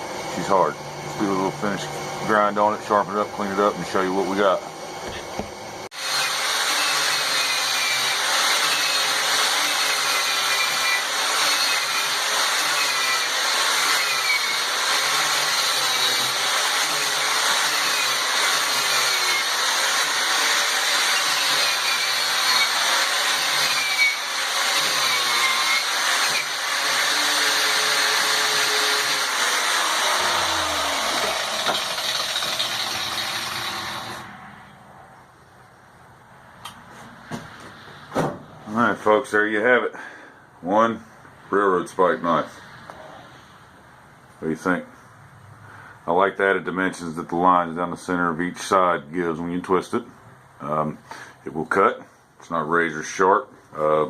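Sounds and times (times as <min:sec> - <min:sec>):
power grinder grinding steel: 0:05.9 - 0:34.4.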